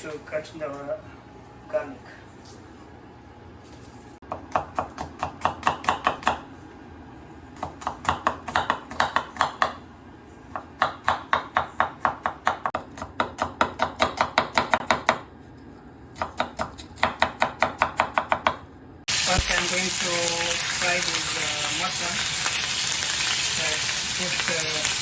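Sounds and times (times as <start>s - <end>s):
knife chopping garlic: 4.2s - 6.5s, 7.5s - 9.8s, 10.5s - 15.3s, 16.1s - 18.6s.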